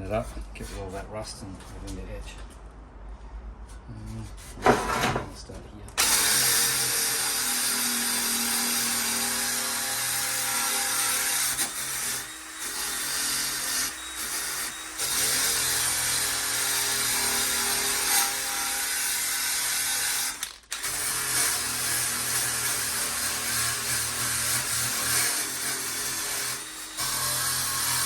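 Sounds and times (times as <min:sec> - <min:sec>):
power tool scouring rust off steel: 0:06.0 - 0:28.0.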